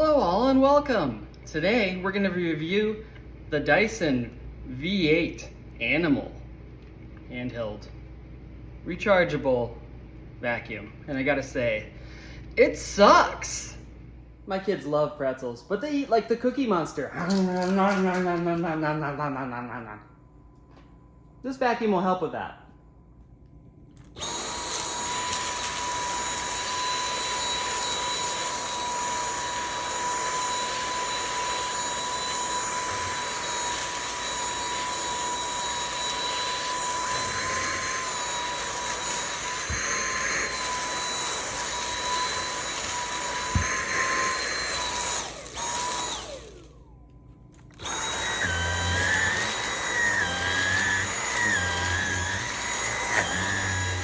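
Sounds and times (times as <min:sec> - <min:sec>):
vacuum cleaner whine: 0:24.1 - 0:47.0, 0:47.6 - 0:54.0.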